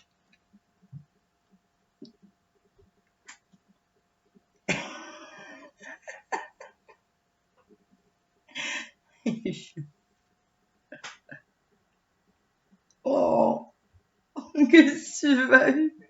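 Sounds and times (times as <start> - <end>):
hard cough: 4.7 - 5.4.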